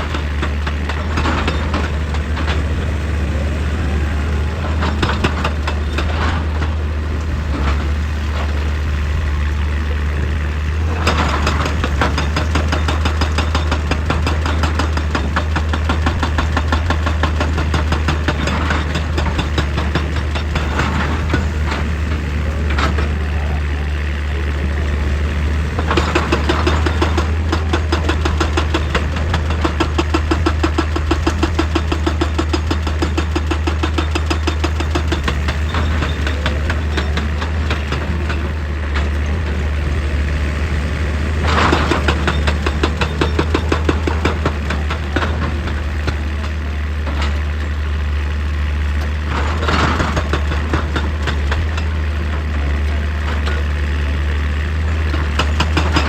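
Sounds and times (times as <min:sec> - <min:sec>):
excavator diesel engine running: 0:00.0 - 0:56.0
rapid knocking: 0:10.7 - 0:23.4, 0:25.4 - 0:38.5, 0:40.1 - 0:46.5.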